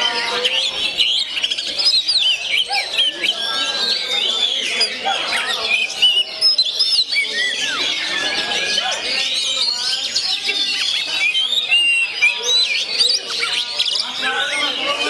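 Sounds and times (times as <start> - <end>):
songbird whistling and chirping: 0.0 - 15.0.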